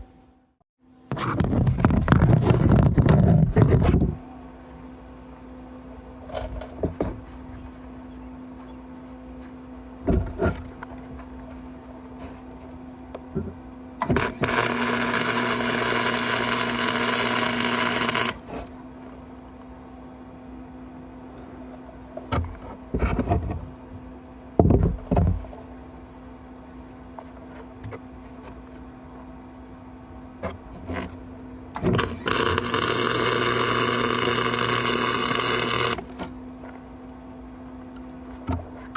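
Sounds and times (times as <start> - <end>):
welding machine hum: 14.0 - 18.8, 31.8 - 36.4
arc welding hiss: 14.2 - 18.6, 32.0 - 36.2.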